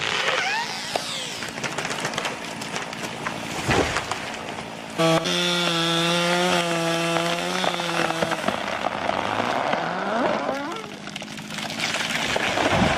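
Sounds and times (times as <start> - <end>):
short rising squeals: 0.0 - 1.4
chainsaw at full throttle: 0.0 - 1.6, 4.8 - 11.2.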